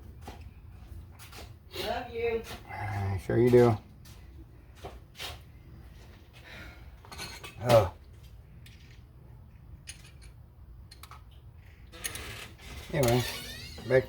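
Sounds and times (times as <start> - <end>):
metal tools clinking: 7.1 - 7.9, 11.9 - 14.0.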